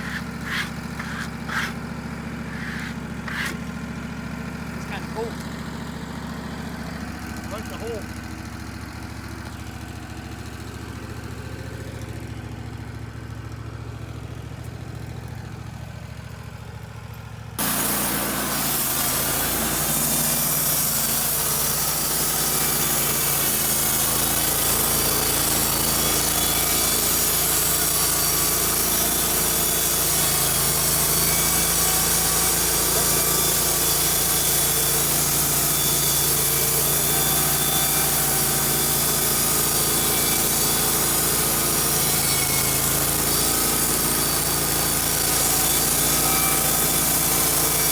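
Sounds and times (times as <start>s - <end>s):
band saw cutting log: 0.0s - 4.0s, 4.8s - 5.6s, 6.5s - 8.1s, 17.6s - 47.9s
sawmill engine hum: 0.0s - 47.9s.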